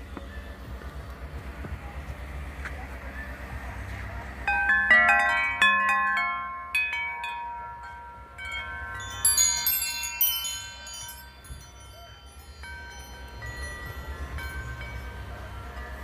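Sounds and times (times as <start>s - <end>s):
wind chime ringing: 4.4s - 16.0s.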